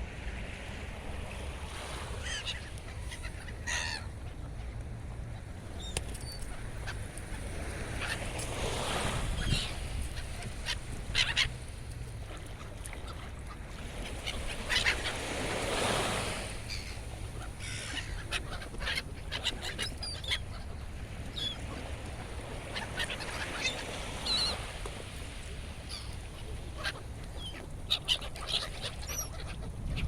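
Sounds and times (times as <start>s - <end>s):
waves washing: 0.0s - 5.8s, 6.4s - 28.0s
seagulls crying: 1.9s - 4.3s, 7.8s - 11.6s, 13.9s - 24.8s, 25.8s - 30.0s.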